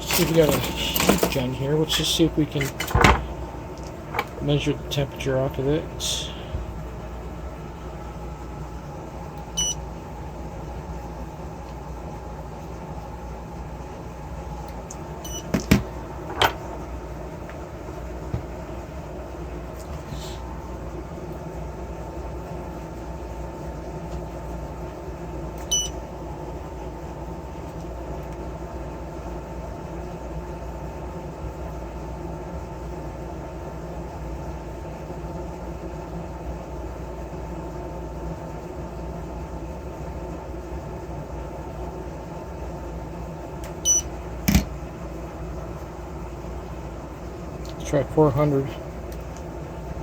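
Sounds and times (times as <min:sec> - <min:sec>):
low background hum: 0:00.0 - 0:50.0
short electronic beeps: 0:43.9 - 0:44.1.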